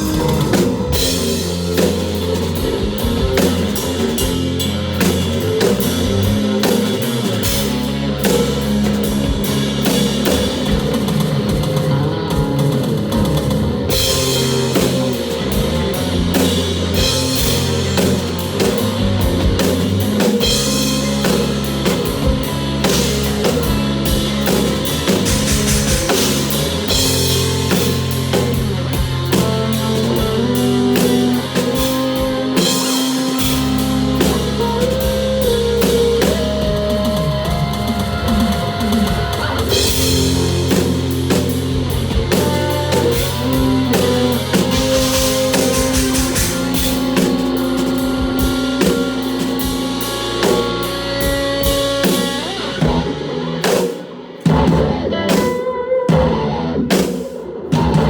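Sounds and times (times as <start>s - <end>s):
deep sustained bass notes: 0.0s - 53.6s
drum kit: 0.0s - 58.0s
band accented hits: 39.7s - 58.0s.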